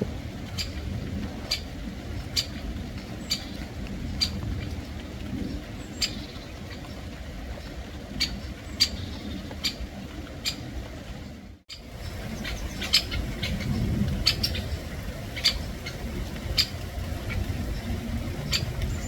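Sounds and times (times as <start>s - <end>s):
steady low rumble: 0.0s - 10.1s
woodpecker kik calls: 11.7s - 17.4s.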